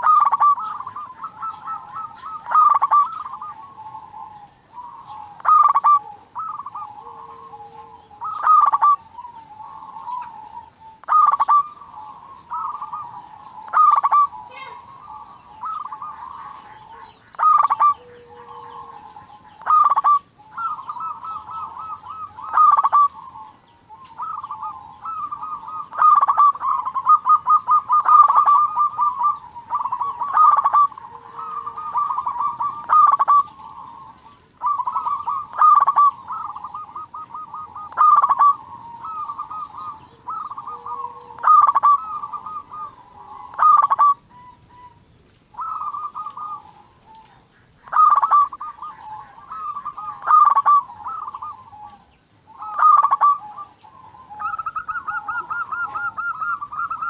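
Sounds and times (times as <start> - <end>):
doves cooing: 0.0 - 57.0.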